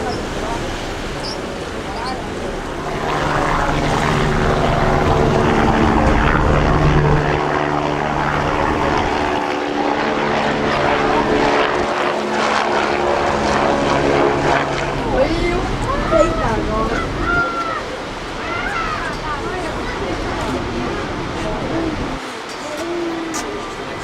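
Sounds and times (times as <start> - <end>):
engine drone: 0.0 - 17.3.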